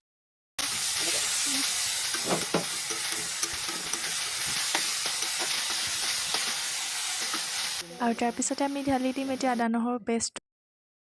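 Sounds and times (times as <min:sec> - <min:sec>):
onions sizzling in hot oil: 0:00.6 - 0:09.6
utensil scraping and knocking pan: 0:01.6 - 0:07.8.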